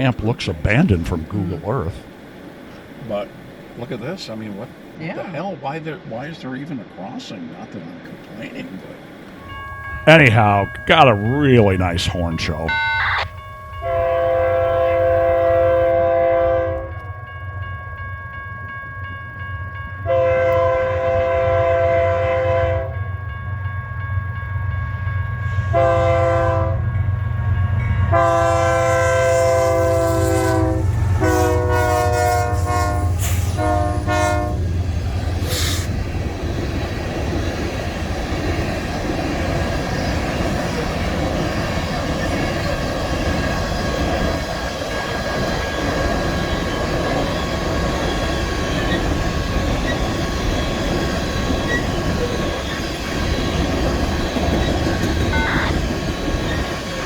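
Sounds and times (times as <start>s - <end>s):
train rumbling and clattering past: 0.0s - 57.0s
locomotive air horn blasts: 13.8s - 16.9s, 20.1s - 23.0s, 25.6s - 26.8s, 28.1s - 34.6s, 55.3s - 55.8s.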